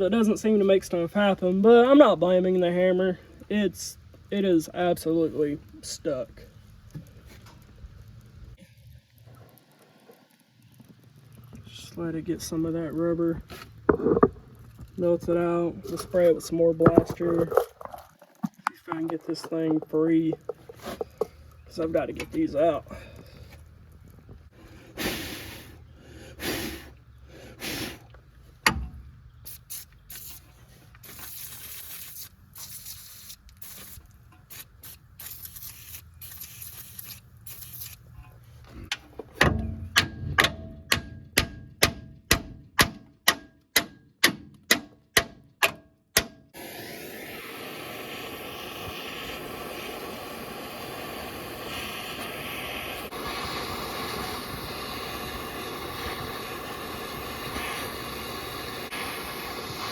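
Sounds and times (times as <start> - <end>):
torch burning with a hiss: 24.9 - 25.8, 26.4 - 27.0, 27.6 - 28.0, 29.5 - 38.1, 46.6 - 59.9
aerosol spray hissing: 29.5 - 38.0, 46.6 - 59.9.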